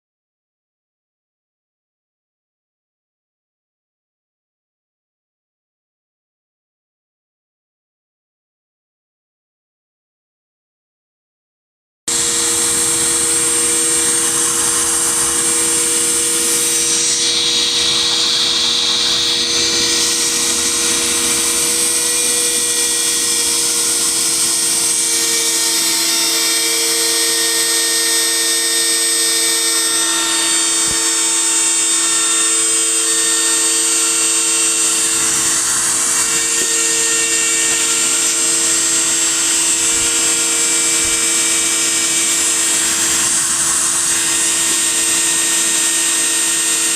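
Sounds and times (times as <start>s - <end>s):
milling machine spindle whining: 12.1s - 46.9s.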